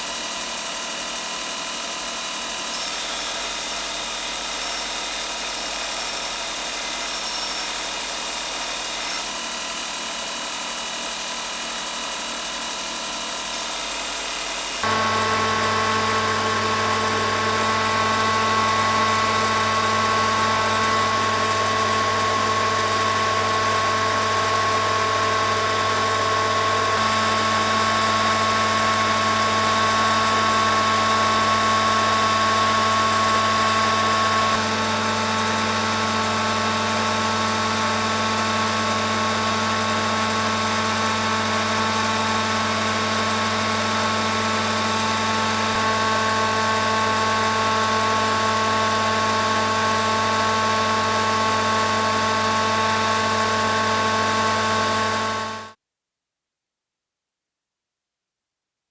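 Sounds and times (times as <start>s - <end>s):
workshop machine motor humming: 14.8s - 55.8s.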